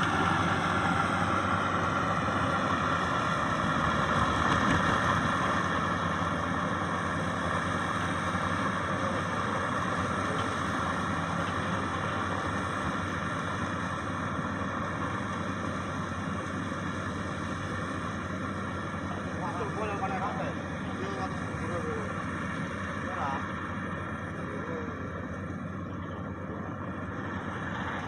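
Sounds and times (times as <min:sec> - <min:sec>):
diesel engine running: 0:00.0 - 0:28.0.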